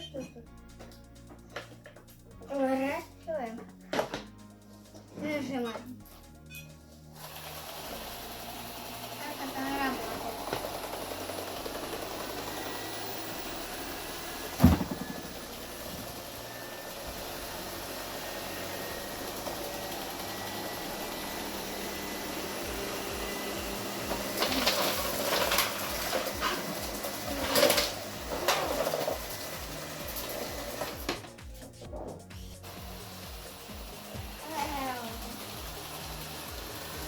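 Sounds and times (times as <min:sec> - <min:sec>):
clattering knocks and scrapes: 0:03.6 - 0:06.8, 0:14.5 - 0:16.4
robot vacuum whirring: 0:07.2 - 0:31.7, 0:32.3 - 0:37.0.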